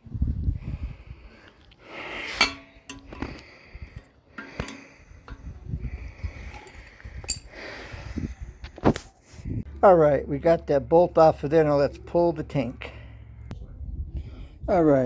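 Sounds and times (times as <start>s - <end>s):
wrench clinking on metal bolt: 4.4s - 5.4s
low handling rumble: 9.4s - 15.0s.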